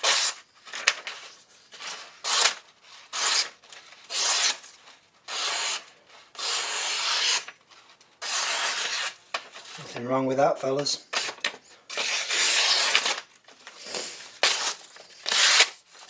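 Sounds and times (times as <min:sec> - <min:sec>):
knife slicing paper: 0:08.2 - 0:09.6, 0:11.1 - 0:13.3, 0:13.9 - 0:15.8.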